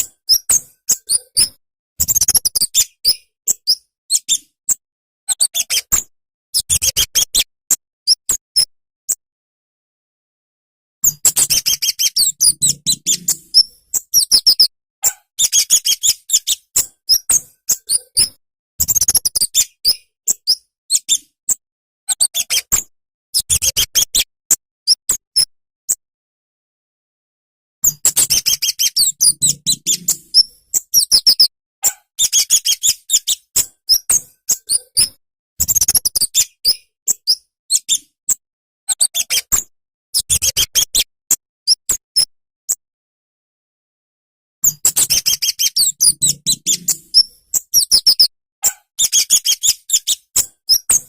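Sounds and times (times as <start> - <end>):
bird singing high thin chirps: 11.0 - 14.7, 15.4 - 21.3, 27.8 - 38.1, 44.6 - 51.0.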